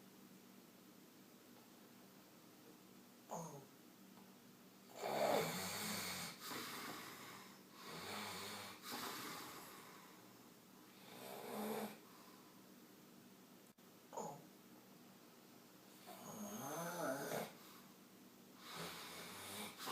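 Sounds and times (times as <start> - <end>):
man snoring: 4.9 - 9.8, 11.0 - 12.0, 16.0 - 17.6, 18.6 - 19.9.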